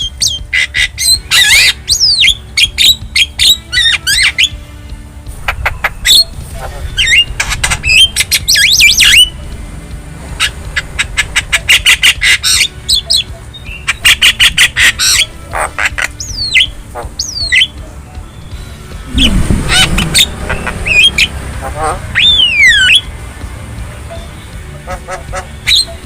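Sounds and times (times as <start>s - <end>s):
bird squawking and clicking: 5.4s - 6.2s, 7.0s - 9.3s, 13.8s - 17.7s.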